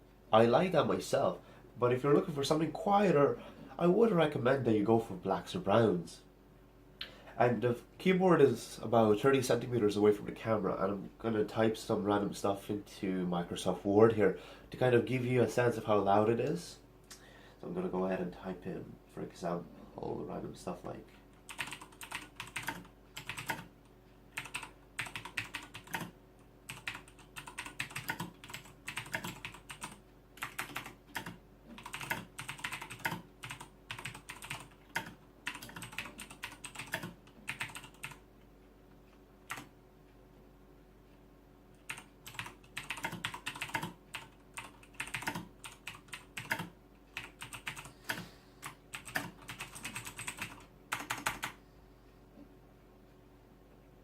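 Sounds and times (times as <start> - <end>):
mechanical keyboard typing: 21.5 - 23.7, 24.3 - 38.2, 39.5 - 39.7, 41.8 - 51.6.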